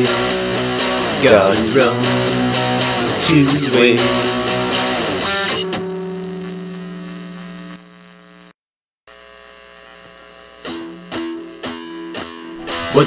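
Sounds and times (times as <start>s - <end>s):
strummed guitar chord ringing: 0.0s - 6.4s, 12.6s - 13.0s.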